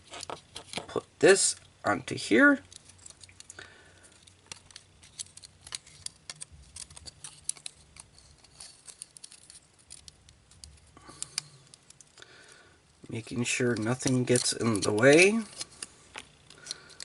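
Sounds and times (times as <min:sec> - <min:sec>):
light rustling of plastic parts: 0:00.0 - 0:17.0
plastic parts clicking: 0:02.7 - 0:12.2, 0:13.7 - 0:17.0.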